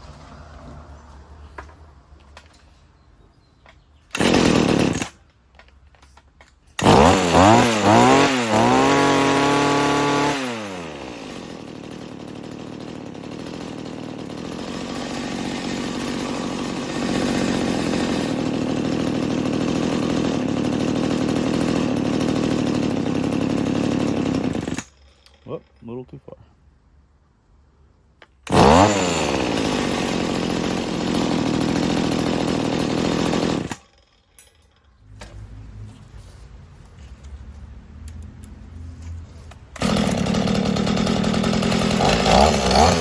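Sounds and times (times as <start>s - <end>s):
small two-stroke engine revving: 4.1s - 5.2s, 6.8s - 24.9s, 28.5s - 33.8s, 39.8s - 43.0s.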